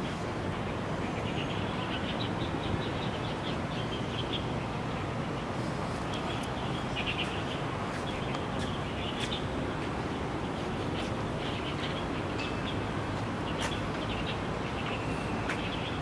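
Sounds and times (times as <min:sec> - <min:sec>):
small birds chirping: 0:00.0 - 0:16.0
steady background hum: 0:00.0 - 0:16.0.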